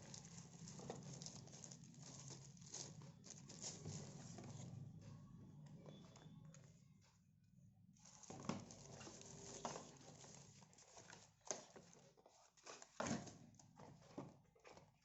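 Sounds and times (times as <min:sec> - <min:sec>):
handling rustling: 0:00.0 - 0:04.7.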